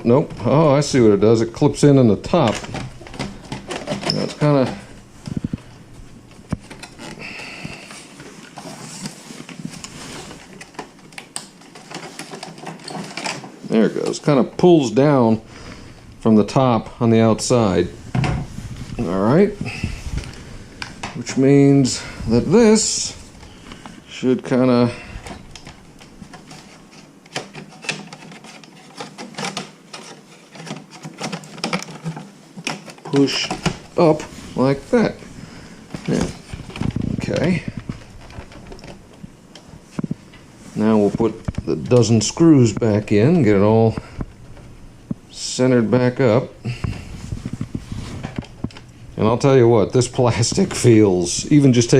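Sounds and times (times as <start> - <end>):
plastic scraping: 0.0 - 49.4
plastic creaking: 2.2 - 5.7, 6.5 - 14.3
plastic clicks and clacks: 27.2 - 33.8.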